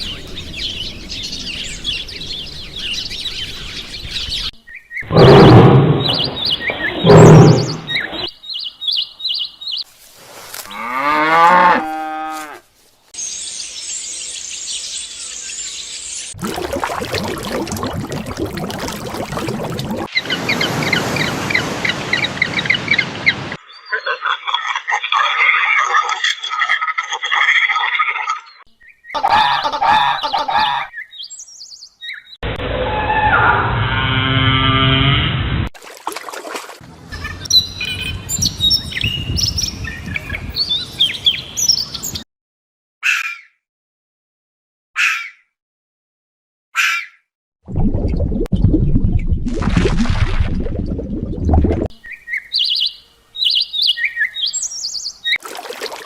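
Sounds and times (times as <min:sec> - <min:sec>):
small birds chirping: 0:00.0 - 0:09.9, 0:13.2 - 0:16.4, 0:28.5 - 0:32.4, 0:37.1 - 0:42.2, 0:52.0 - 0:55.4
water splashing and running: 0:16.3 - 0:23.6, 0:35.8 - 0:37.0, 0:47.7 - 0:51.9, 0:55.4 - 0:56.0.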